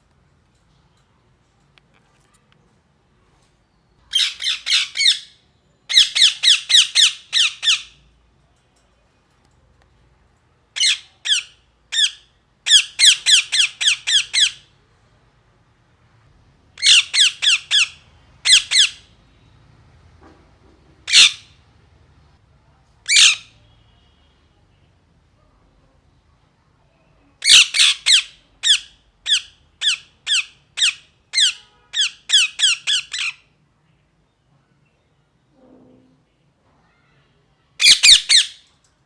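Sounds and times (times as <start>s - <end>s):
parakeet squawking: 4.1s - 8.0s, 10.8s - 14.7s, 16.8s - 19.1s, 21.1s - 21.6s, 23.1s - 23.5s, 27.4s - 33.5s, 37.8s - 38.6s.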